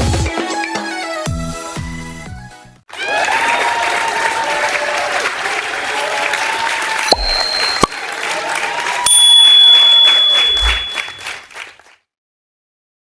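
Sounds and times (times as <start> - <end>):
applause: 2.9 - 9.0, 11.5 - 12.0
bright bell dings: 7.1 - 8.0, 9.1 - 11.4.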